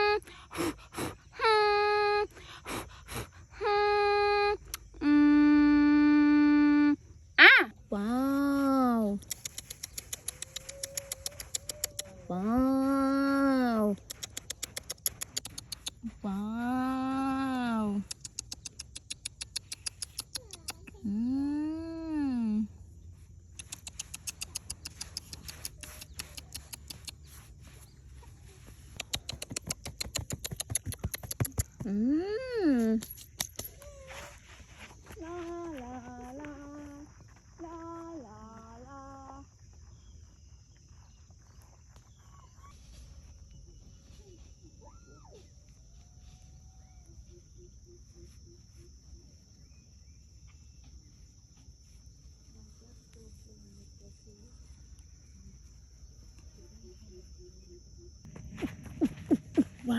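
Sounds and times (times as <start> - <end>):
quick even pips: 9.1 - 12.2, 13.8 - 16.3, 23.5 - 27.3
high insect drone: 32.7 - 59.9.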